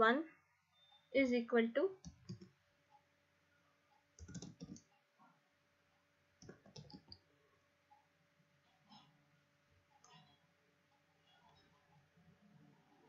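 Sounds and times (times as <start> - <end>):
computer keyboard typing: 2.0 - 2.5, 4.2 - 4.9, 6.4 - 7.2.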